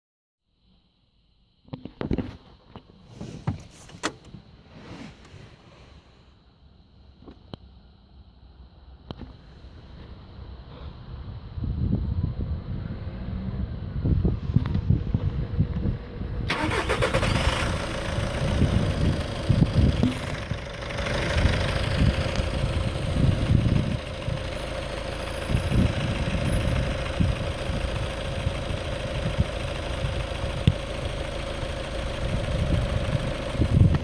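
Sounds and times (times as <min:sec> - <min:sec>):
car engine starting and idling: 0:13.3 - 0:34.0.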